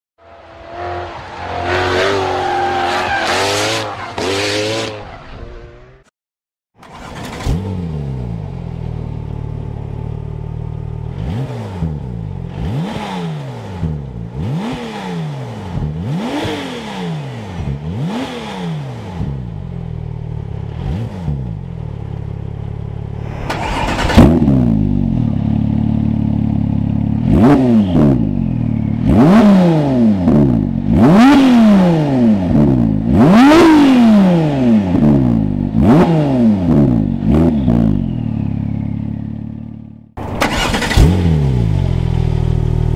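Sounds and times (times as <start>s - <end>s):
sports car engine revving: 6.8s - 39.0s.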